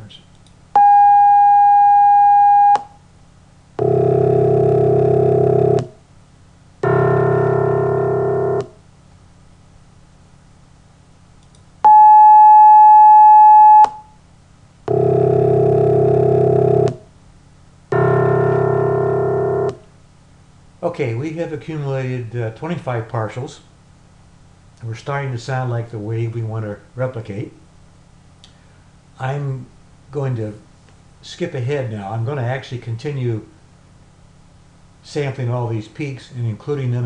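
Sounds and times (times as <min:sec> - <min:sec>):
pure high tone: 0:00.8 - 0:03.0, 0:11.9 - 0:14.2.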